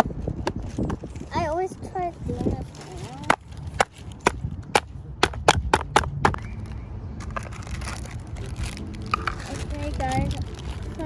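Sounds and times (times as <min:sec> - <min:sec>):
low rumble: 0:00.0 - 0:11.0
faint rustle: 0:00.2 - 0:04.2.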